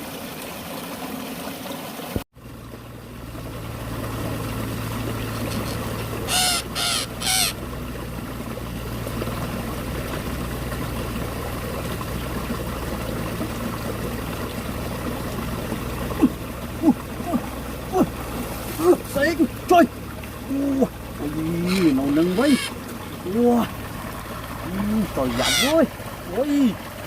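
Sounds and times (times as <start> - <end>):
running water rushing: 0.0 - 27.0
bird calls: 5.3 - 7.6, 20.5 - 23.7, 24.6 - 26.8.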